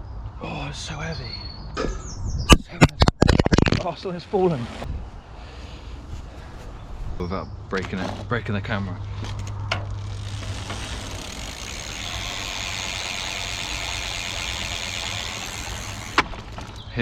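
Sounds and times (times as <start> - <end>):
bicycle freewheel ticking buzz: 9.8 - 16.9.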